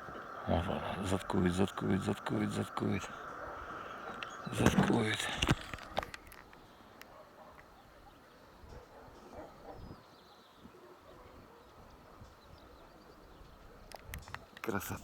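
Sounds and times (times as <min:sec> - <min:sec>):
faint low wind rumble: 0:00.0 - 0:07.0
faint bird calls: 0:00.0 - 0:15.0.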